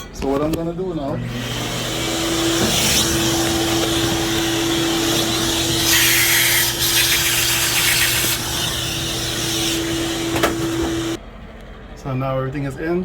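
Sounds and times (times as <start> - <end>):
vacuum motor humming: 1.2 - 11.2.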